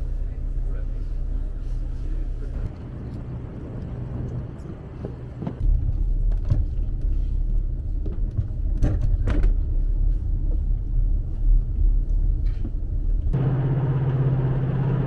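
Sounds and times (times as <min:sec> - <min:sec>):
heavy low rumble: 0:09.6 - 0:15.0.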